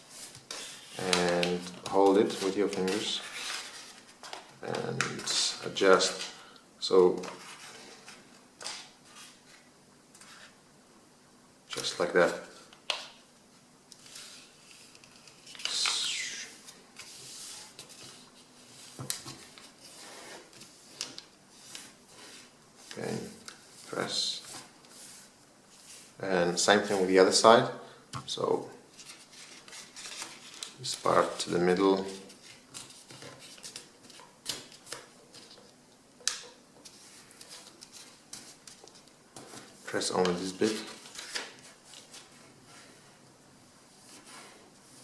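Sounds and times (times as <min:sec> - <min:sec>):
paper rustling: 0:00.1 - 0:06.3, 0:28.9 - 0:35.8, 0:36.8 - 0:42.9.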